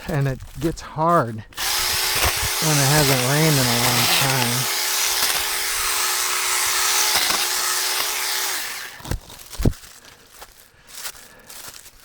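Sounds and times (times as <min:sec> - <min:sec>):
mini chainsaw whining: 0:01.5 - 0:10.0.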